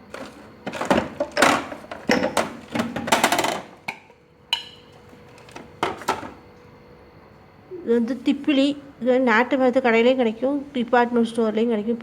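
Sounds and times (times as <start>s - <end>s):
containers knocking and clattering: 0.0s - 6.4s.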